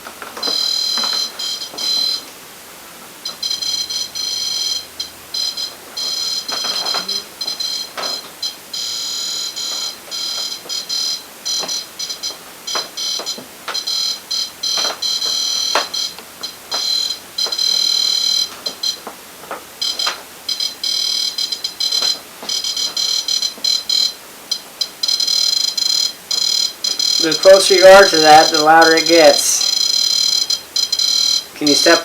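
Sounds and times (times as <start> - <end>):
shrill electronic alarm tone: 0.4 - 2.3, 3.2 - 19.1, 19.8 - 32.0.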